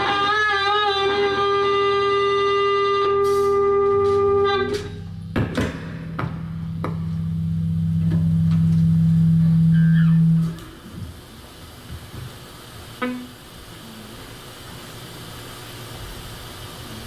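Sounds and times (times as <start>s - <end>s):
electric guitar note ringing: 0.0s - 11.4s, 12.9s - 13.8s
low steady amplifier tone: 0.0s - 17.0s
drum hits: 4.7s - 9.0s.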